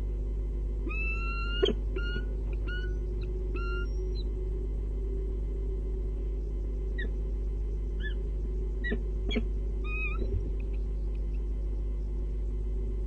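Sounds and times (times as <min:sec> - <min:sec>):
low electrical hum: 0:00.0 - 0:13.0
high chirping bird calls: 0:00.9 - 0:04.3, 0:08.0 - 0:08.2, 0:08.8 - 0:11.5.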